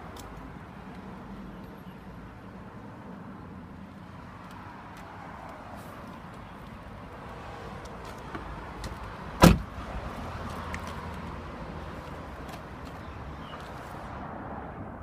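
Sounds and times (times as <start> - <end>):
car door shutting thud: 9.4 - 9.7.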